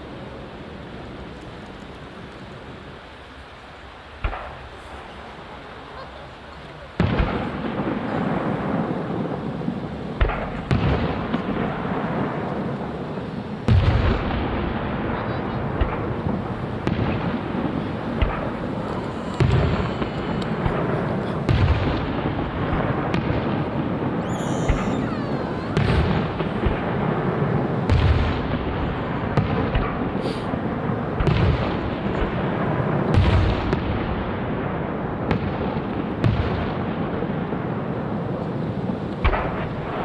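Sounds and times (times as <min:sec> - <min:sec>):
fireworks booms and crackling: 0:04.1 - 0:40.0
firework whistling: 0:06.9 - 0:34.0.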